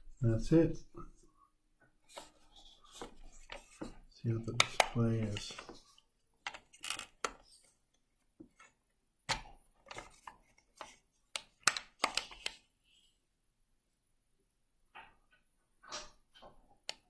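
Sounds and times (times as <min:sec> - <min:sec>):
plastic alarm clock knocks and clicks: 0:04.6 - 0:05.7.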